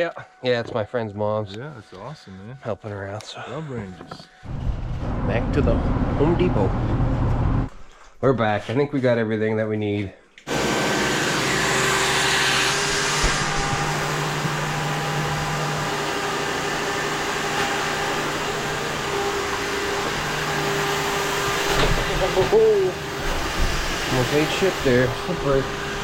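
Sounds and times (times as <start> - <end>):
machine hum: 4.4 - 7.7, 10.5 - 26.0.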